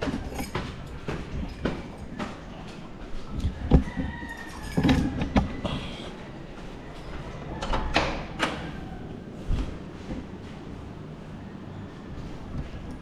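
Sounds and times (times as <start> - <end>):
knocks and clatters: 0.0 - 5.6.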